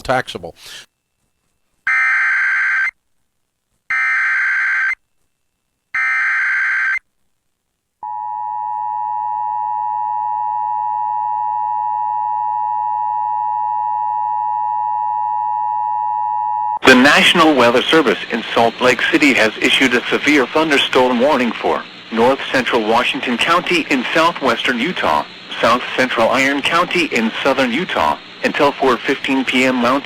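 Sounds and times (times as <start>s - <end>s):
buzzing data bursts: 16.8s - 30.0s.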